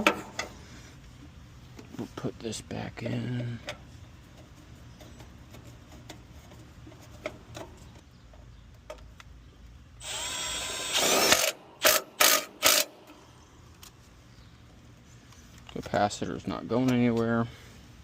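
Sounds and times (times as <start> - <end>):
cordless drill whining: 10.0 - 12.9.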